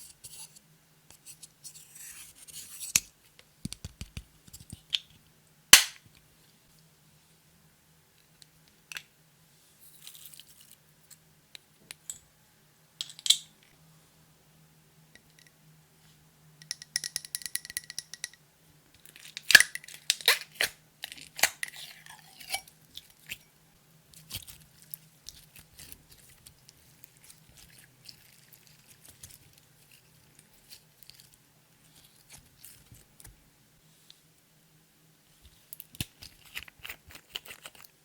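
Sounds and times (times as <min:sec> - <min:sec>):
sticky slime crackles: 0:24.1 - 0:33.3.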